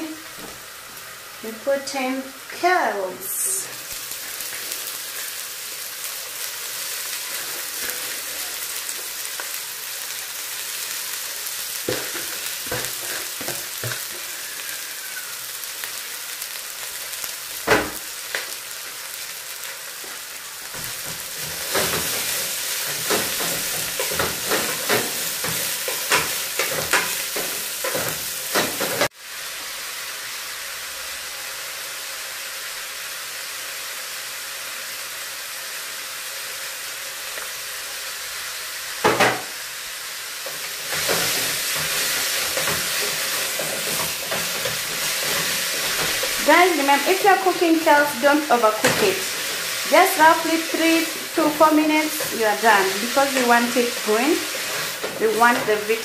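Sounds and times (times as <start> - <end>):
greens sizzling in hot oil: 0.0 - 56.0.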